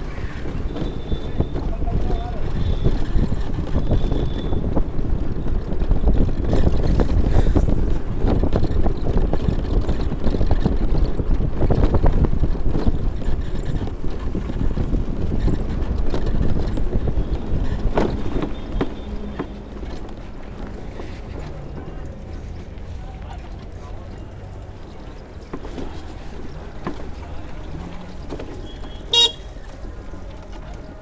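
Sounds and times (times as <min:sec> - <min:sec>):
wind buffeting microphone: 0:00.0 - 0:31.0
knocks and crackles: 0:02.5 - 0:22.8.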